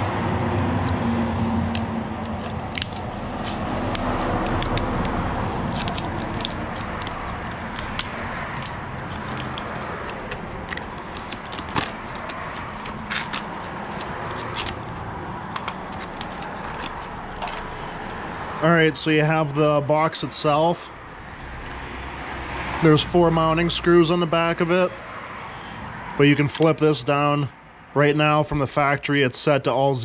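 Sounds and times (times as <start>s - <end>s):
packaging crackling and clicking: 1.6s - 18.2s.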